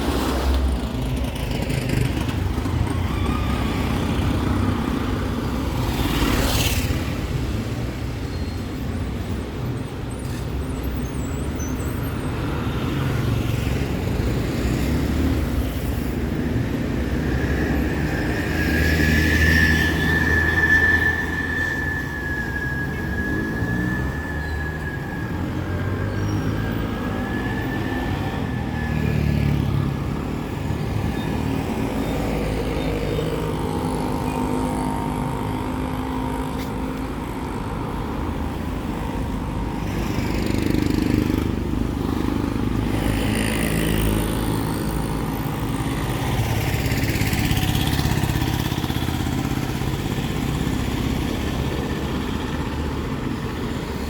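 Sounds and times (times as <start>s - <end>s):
vehicle engines passing: 0.0s - 54.0s.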